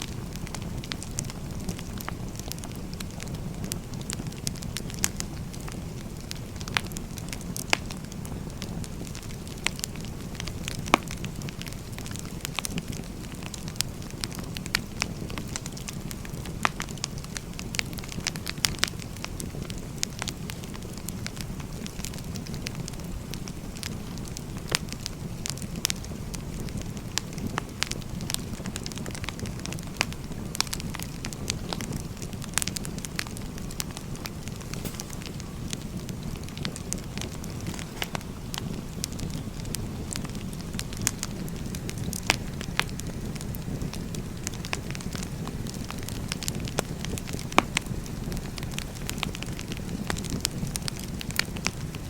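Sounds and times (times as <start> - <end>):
burning logs crackling and popping: 0.0 - 52.0
fire low rush: 32.6 - 47.2.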